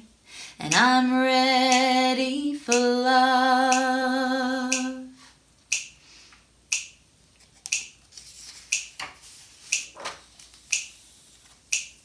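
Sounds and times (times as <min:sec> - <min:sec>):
finger snaps: 0:04.7 - 0:05.0, 0:05.7 - 0:06.0, 0:06.7 - 0:07.0.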